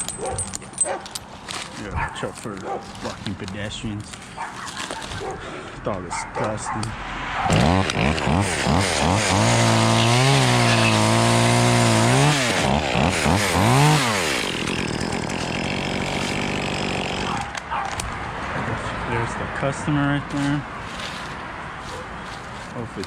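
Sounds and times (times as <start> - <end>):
two-stroke chainsaw revving: 7.5 - 17.6.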